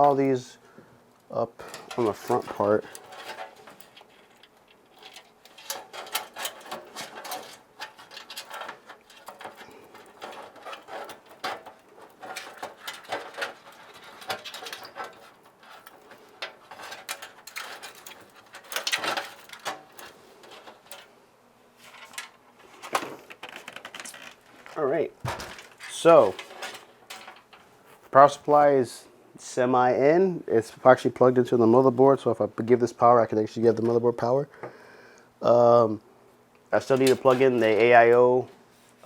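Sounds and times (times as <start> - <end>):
computer parts clicking and rattling: 1.6 - 21.1, 21.9 - 27.7, 36.8 - 38.0.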